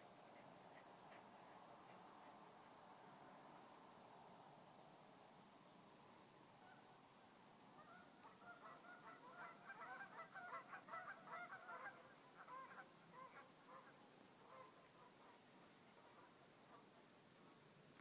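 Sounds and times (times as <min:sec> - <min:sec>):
geese honking: 0:07.8 - 0:14.7.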